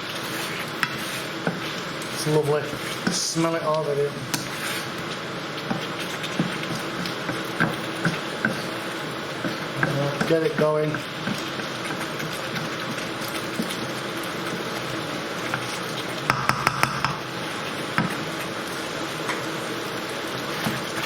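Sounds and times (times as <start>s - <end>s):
curry bubbling and sizzling in pan: 0.0s - 21.0s.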